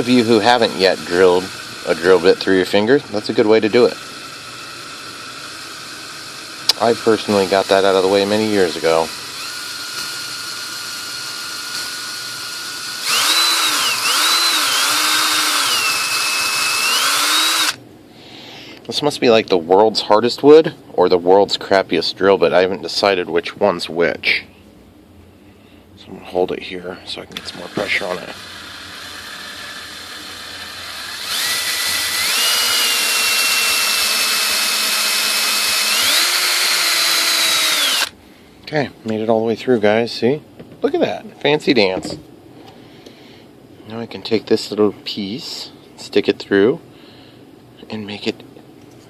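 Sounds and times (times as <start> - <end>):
electric drill boring through wood: 0.0 - 17.8, 27.4 - 38.1.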